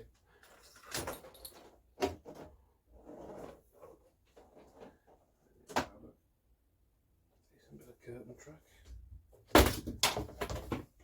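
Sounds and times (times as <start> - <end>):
rubbing and scraping: 2.3 - 5.3.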